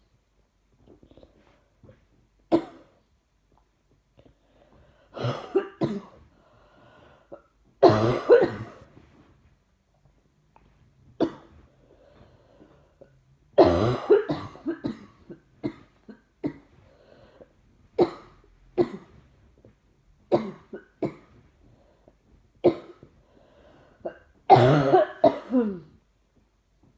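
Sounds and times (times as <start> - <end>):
person coughing: 5.2 - 6.2, 7.4 - 8.9, 13.6 - 16.7, 24.1 - 26.0.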